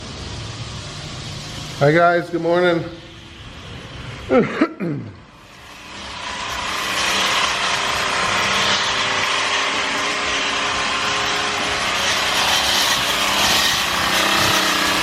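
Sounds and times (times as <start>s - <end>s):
string trimmer cutting grass: 5.3s - 15.0s.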